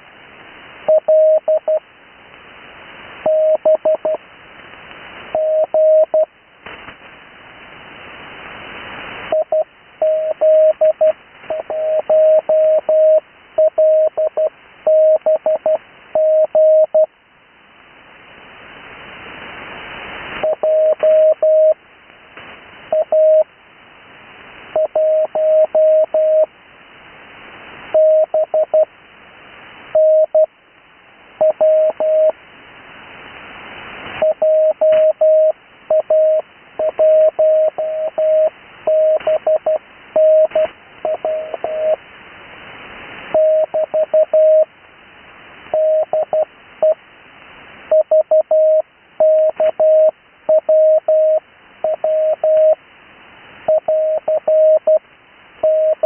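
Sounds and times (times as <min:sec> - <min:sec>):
radio receiver hiss: 0:00.0 - 0:17.2, 0:17.8 - 0:56.0
morse code tone: 0:20.4 - 0:21.8, 0:34.2 - 0:42.0, 0:43.4 - 0:44.7, 0:47.9 - 0:52.8, 0:53.7 - 0:55.0, 0:55.6 - 0:56.0.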